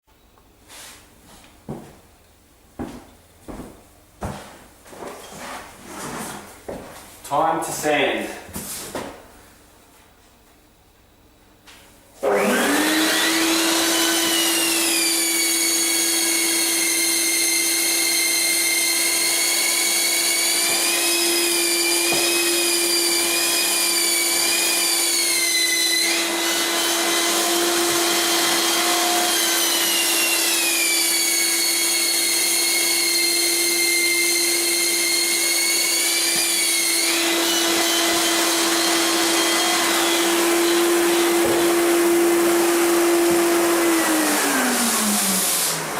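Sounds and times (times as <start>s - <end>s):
electric sander whining: 12.2s - 45.9s.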